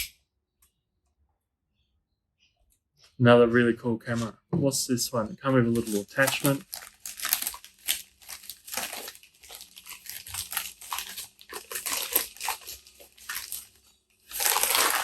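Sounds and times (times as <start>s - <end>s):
packing wrap rustling: 5.7s - 15.0s.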